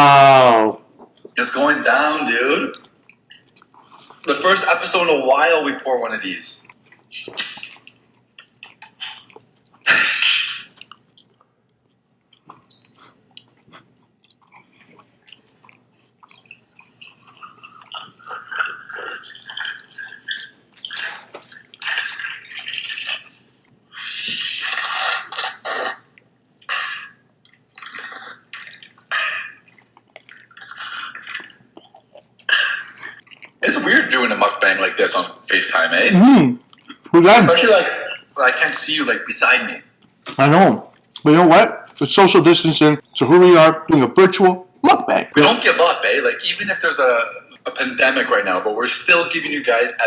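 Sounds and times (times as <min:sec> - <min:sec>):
chewing with wet mouth noises: 0:02.7 - 0:04.3, 0:06.6 - 0:33.6, 0:36.6 - 0:37.1, 0:39.9 - 0:42.0.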